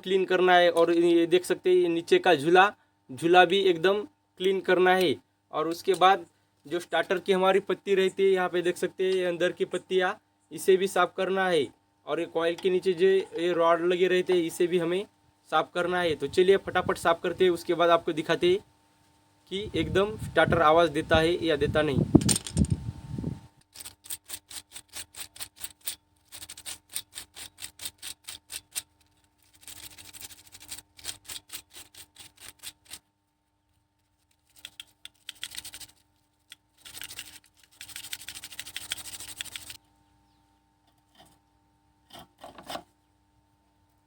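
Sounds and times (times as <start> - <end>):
sandpaper scraping on metal: 23.6 - 39.8.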